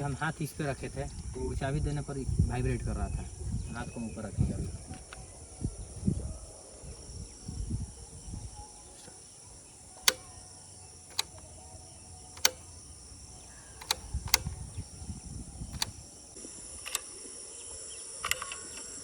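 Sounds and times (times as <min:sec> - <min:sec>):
crickets chirping: 0:00.0 - 0:19.0
ignition key clicks: 0:08.6 - 0:16.3.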